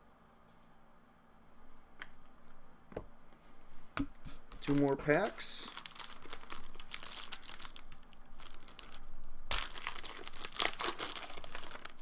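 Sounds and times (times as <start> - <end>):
wrapper tearing and crinkling: 4.5 - 12.0.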